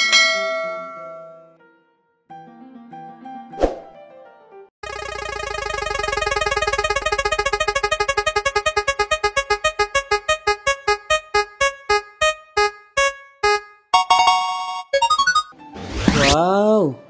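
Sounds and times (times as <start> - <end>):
spinning wheel ticking: 4.8 - 12.0.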